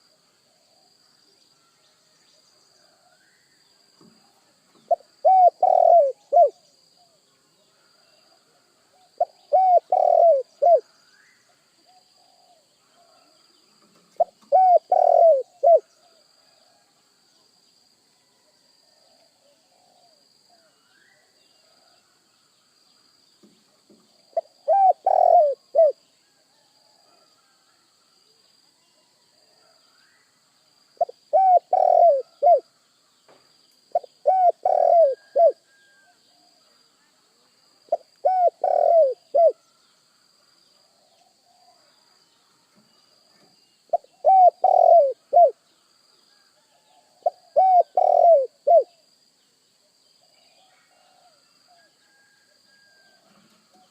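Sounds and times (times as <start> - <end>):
dove cooing: 4.9 - 6.6, 9.1 - 10.9, 14.2 - 16.2, 24.3 - 26.0, 31.0 - 32.6, 33.9 - 35.6, 37.9 - 39.6, 43.9 - 45.6, 47.0 - 49.0.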